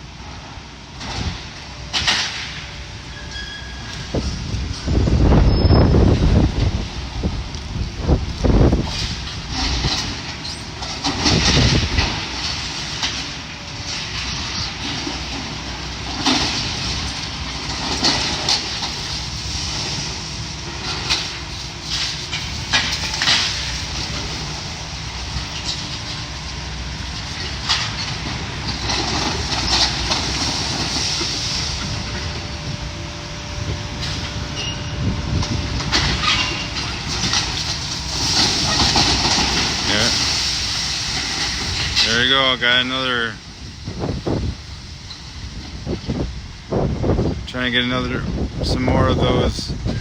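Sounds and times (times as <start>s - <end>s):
excavator engine rumble: 0.0s - 50.0s
metal and debris crashing: 8.6s - 26.2s, 27.0s - 32.4s, 35.3s - 42.3s.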